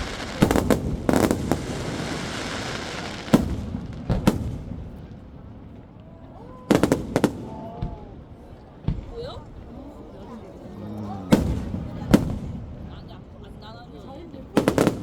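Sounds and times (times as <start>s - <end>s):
fireworks crackling hiss: 0.0s - 5.0s
fireworks bangs: 0.0s - 5.9s, 6.5s - 13.2s, 14.4s - 15.0s.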